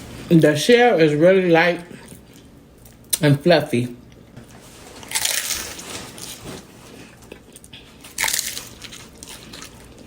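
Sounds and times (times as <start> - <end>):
person chewing: 5.0 - 10.0.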